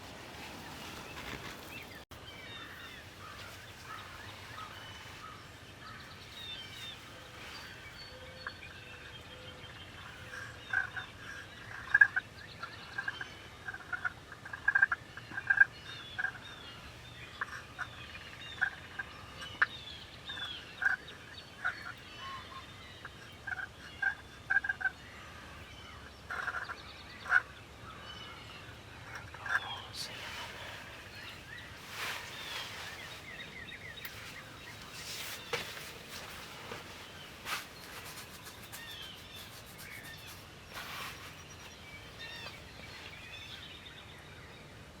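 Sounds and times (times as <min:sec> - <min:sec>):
scratchy rustling: 0:00.0 - 0:02.1, 0:30.0 - 0:43.2
songbirds chirping: 0:00.0 - 0:45.0
wild turkey calling: 0:00.6 - 0:07.8, 0:10.0 - 0:12.2, 0:20.3 - 0:21.0, 0:26.3 - 0:27.6, 0:28.6 - 0:40.4.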